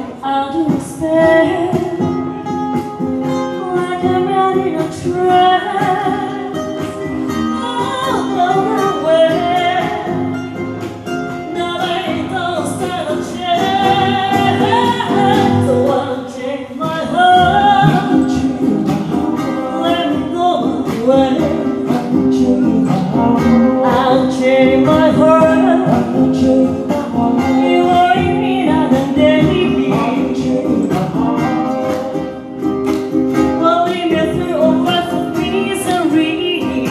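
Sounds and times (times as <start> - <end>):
plucked string accompaniment: 0.0 - 36.9
person singing: 11.5 - 36.9.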